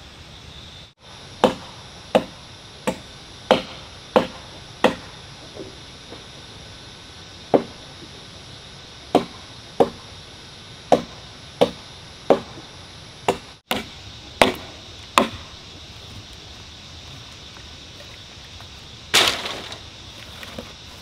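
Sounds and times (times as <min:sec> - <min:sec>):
blade chopping strikes: 0:01.4 - 0:05.2, 0:13.3 - 0:15.5.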